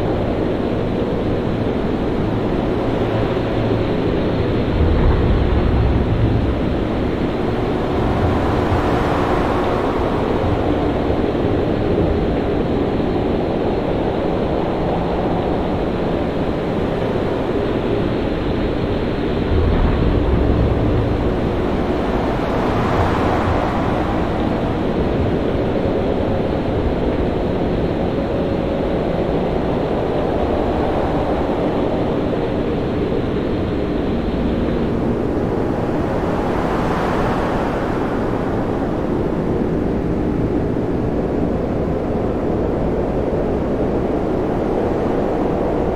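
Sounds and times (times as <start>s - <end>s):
deep rumble: 0.0s - 12.7s, 17.8s - 27.8s
heavy waves: 0.0s - 45.9s
wind: 0.0s - 45.9s
waves surging and breaking: 0.2s - 45.9s.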